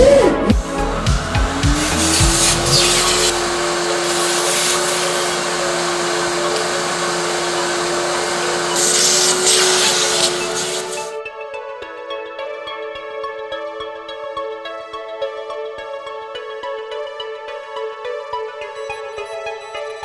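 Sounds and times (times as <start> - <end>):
vacuum cleaner motor whine: 0.0 - 11.2.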